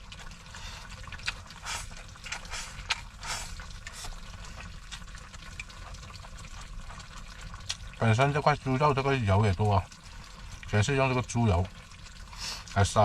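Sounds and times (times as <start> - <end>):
person chewing food: 0.0 - 8.0
low steady hum: 0.0 - 13.0.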